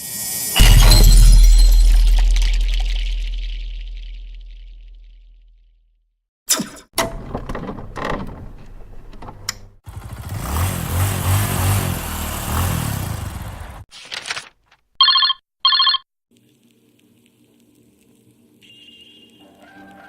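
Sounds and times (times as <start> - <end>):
trilling telephone rings: 15.0 - 16.0.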